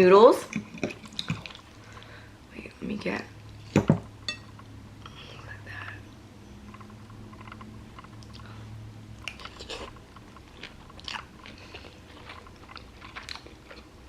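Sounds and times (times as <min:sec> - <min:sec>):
low steady hum: 0:00.0 - 0:14.0
person chewing noodles: 0:00.6 - 0:02.2, 0:09.2 - 0:14.0.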